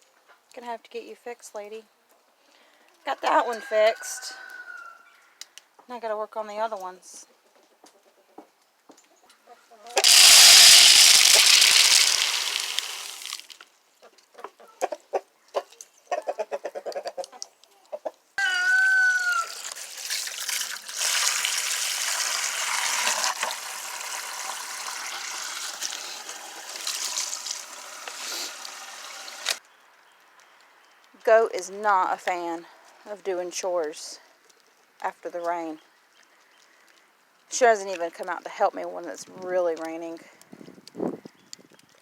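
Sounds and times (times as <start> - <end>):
chickens clucking: 7.4 - 10.1, 14.0 - 19.6
steady hiss: 10.0 - 13.6, 23.0 - 29.6.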